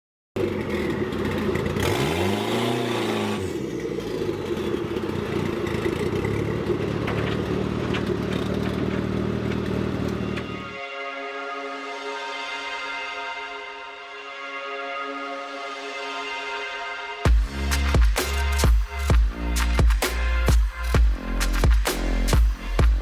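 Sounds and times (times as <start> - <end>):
car engine revving and idling: 0.4 - 10.8, 17.3 - 23.0.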